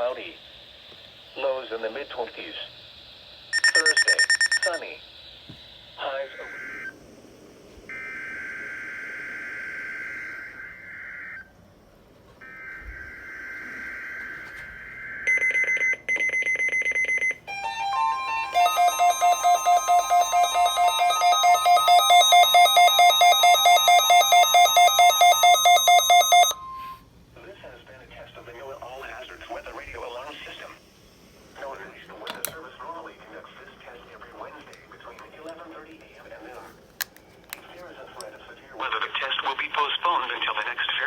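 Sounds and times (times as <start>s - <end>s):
pulsing beeps: 3.5s - 4.8s, 12.4s - 27.0s
warbling data tones: 3.5s - 4.9s, 12.4s - 26.9s
loud steady alert tone: 3.6s - 4.8s, 12.4s - 27.0s.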